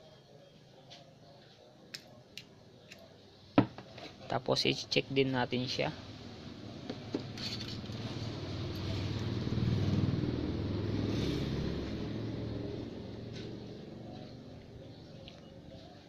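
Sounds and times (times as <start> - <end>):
vehicle passing by: 5.9 - 15.8.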